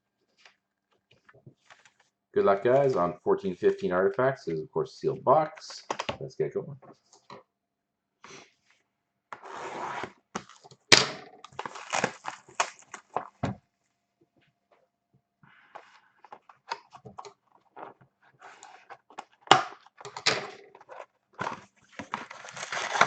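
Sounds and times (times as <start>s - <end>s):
plastic wrap crinkling: 11.4s - 13.4s, 20.8s - 23.0s
cardboard rustling: 11.5s - 13.6s, 20.8s - 23.0s.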